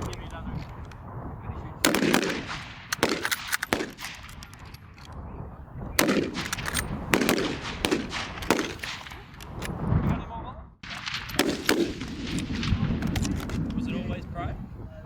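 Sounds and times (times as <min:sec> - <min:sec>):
wind rumble on microphone: 0:00.0 - 0:15.0
rifle shots with echo: 0:01.8 - 0:04.7, 0:05.9 - 0:09.7, 0:10.8 - 0:13.4.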